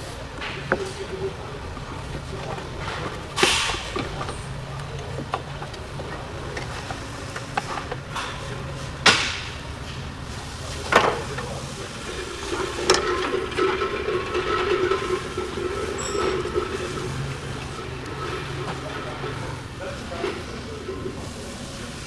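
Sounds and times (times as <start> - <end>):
steady whirring hum: 0.0 - 22.0.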